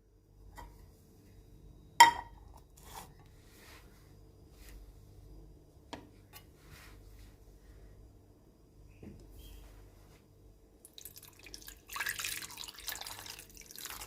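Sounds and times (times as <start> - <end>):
low steady hum: 0.0 - 14.0
soft rustling: 6.1 - 8.0.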